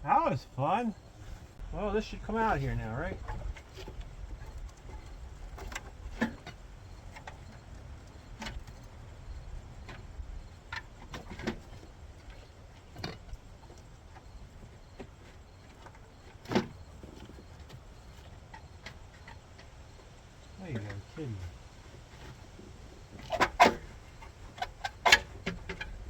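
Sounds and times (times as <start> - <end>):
low background rumble: 0.0 - 16.2
engine parts knocking and clicking: 3.1 - 21.4, 22.0 - 26.0.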